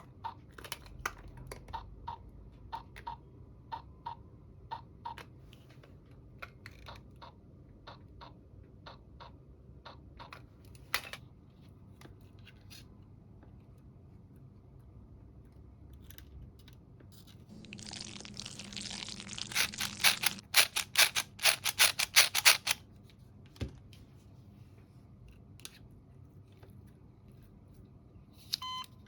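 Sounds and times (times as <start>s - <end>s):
plastic toy pieces clicking: 17.7s - 22.8s.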